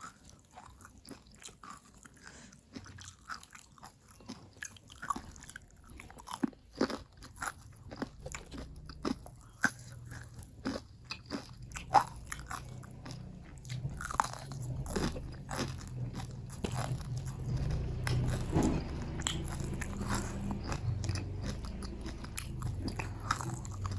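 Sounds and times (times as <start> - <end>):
chewing crunchy food: 0.0 - 23.9
low hum: 11.5 - 23.9.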